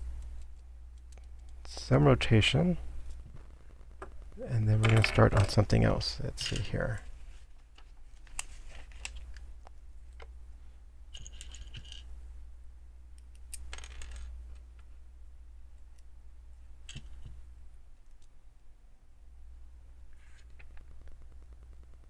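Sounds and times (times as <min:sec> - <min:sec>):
plastic pieces clicking: 0:04.0 - 0:05.6
jangly rattle of plastic pieces: 0:04.8 - 0:05.7.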